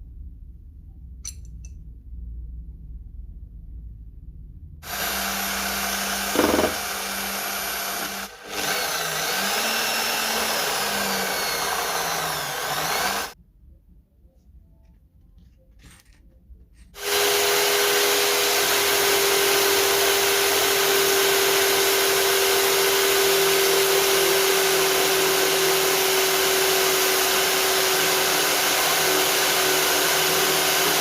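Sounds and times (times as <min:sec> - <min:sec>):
electric drill running: 0:04.8 - 0:13.4, 0:17.0 - 0:31.0
abrasive rasping on wood: 0:04.9 - 0:13.3.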